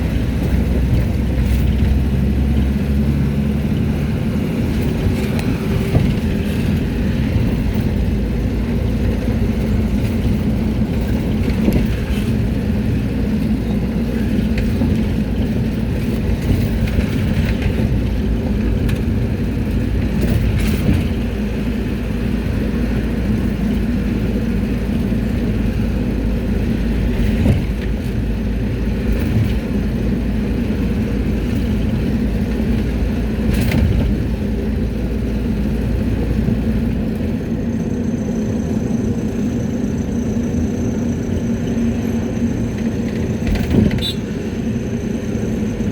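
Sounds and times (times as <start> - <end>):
body rattles and knocks: 0.0 - 37.4, 42.8 - 44.2
minibus engine and road noise: 0.0 - 45.9.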